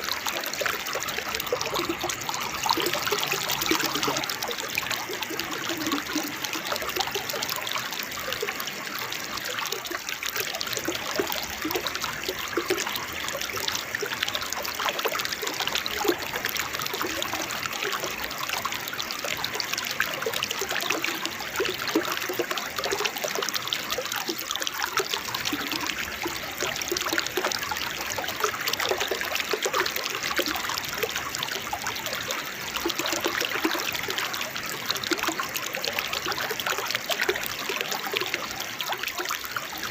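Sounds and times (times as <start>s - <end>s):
small waterfall splashing: 0.0s - 39.9s.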